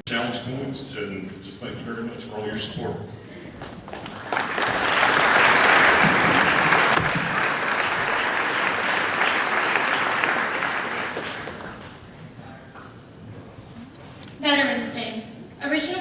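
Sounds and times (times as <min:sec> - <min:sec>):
audience applauding: 0:03.6 - 0:12.1.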